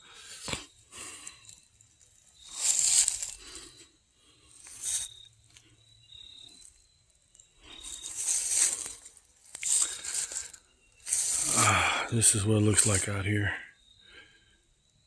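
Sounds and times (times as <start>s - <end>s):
footsteps crunching through dry leaves: 2.3s - 3.8s, 4.6s - 5.1s, 7.7s - 13.2s.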